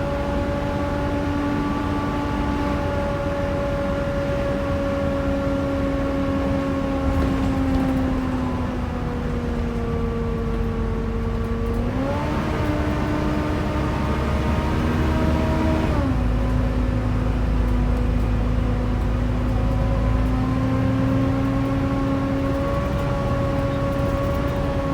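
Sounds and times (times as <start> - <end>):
bus engine rumble: 0.0 - 24.9
bus engine whine: 0.0 - 24.9.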